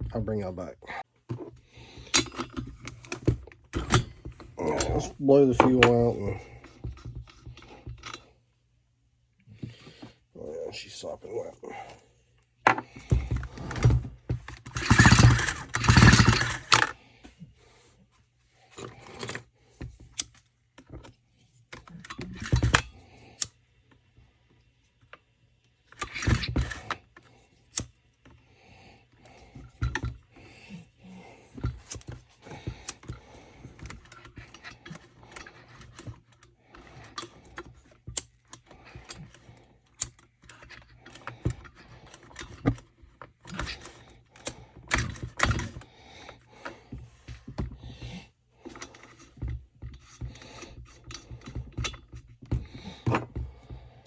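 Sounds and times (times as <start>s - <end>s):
parts and tools clicking: 2.0s - 8.3s, 12.6s - 17.0s, 18.7s - 24.0s, 25.9s - 28.4s, 29.1s - 53.8s.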